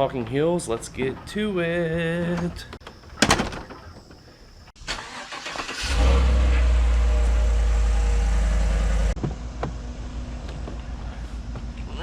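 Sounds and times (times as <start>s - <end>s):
vehicle engine starting and running: 4.9s - 9.2s.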